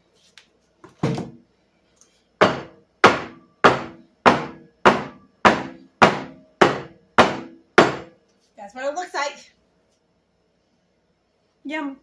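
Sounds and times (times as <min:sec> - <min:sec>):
sharp knocks on hard surface: 0:02.4 - 0:08.2.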